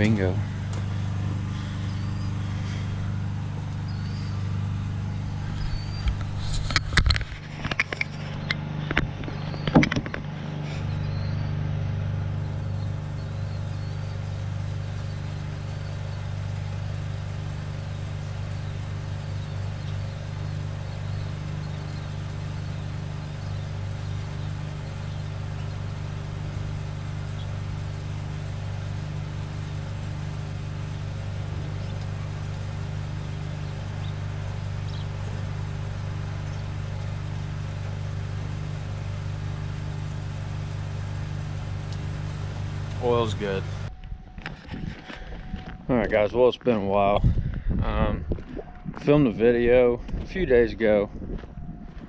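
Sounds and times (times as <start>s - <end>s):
engine idling: 0.0s - 52.0s
metallic clanks and rattles: 5.5s - 10.4s.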